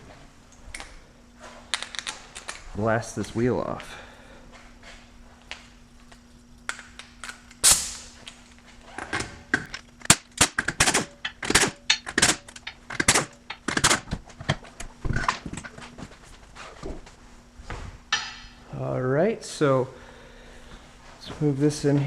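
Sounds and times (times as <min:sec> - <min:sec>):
sharp rattling cracks: 0:06.6 - 0:08.5, 0:09.5 - 0:15.4
impact wrench hammering: 0:09.6 - 0:14.6, 0:18.1 - 0:18.6.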